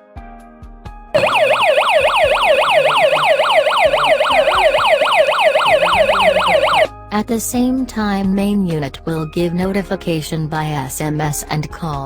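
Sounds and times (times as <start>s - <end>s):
security alarm siren wailing: 1.2s - 6.9s.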